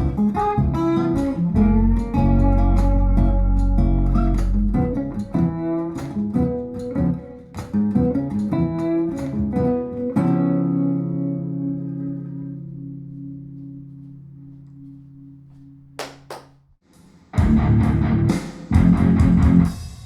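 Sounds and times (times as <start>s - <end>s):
deep bass: 0.0s - 5.6s, 17.4s - 19.8s
guitar music over loudspeakers: 0.0s - 15.7s, 17.4s - 19.7s.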